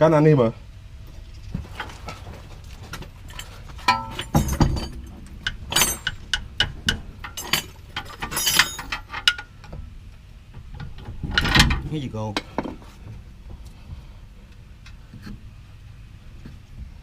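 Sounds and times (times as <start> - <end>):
metallic clinks of tools: 3.3 - 9.5.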